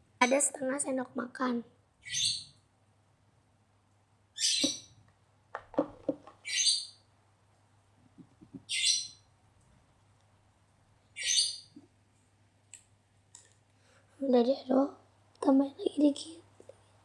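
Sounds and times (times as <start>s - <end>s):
bird chirping: 2.0s - 2.6s, 4.3s - 5.0s, 6.4s - 7.1s, 8.1s - 9.4s, 11.0s - 11.9s.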